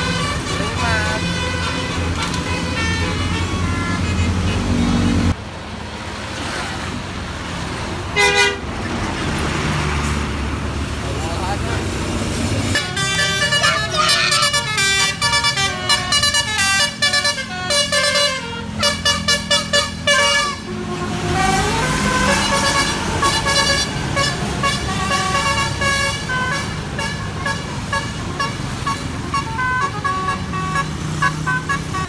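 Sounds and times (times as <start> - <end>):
bus horn multi-tone toots: 0.0 - 5.3, 8.2 - 8.7, 12.7 - 32.0
bus engine running: 0.0 - 32.0.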